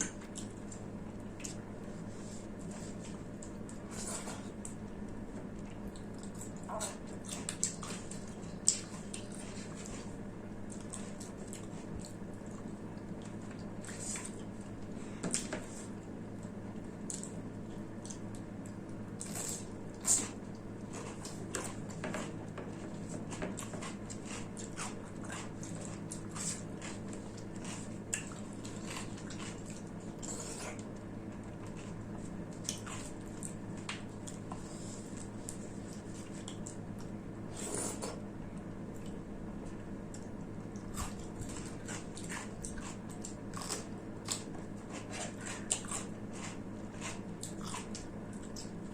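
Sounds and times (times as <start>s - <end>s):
steady low hum: 0.0s - 48.9s
wet chewing and mouth smacks: 40.1s - 48.8s.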